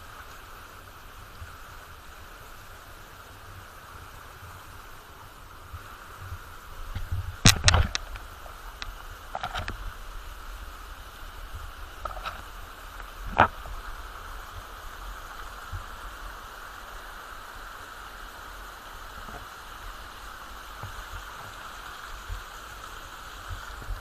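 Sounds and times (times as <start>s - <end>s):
waterfall rushing: 0.0s - 24.0s
sharp click: 7.4s - 8.2s.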